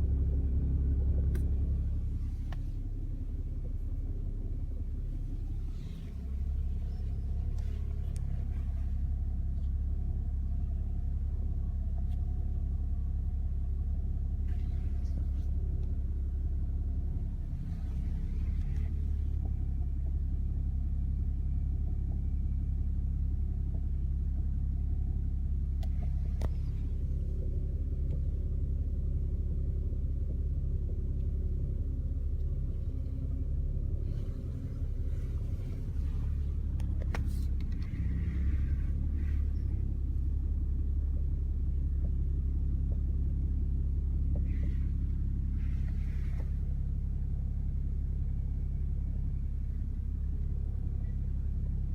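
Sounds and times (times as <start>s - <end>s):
car engine rumbling: 0.0s - 51.9s.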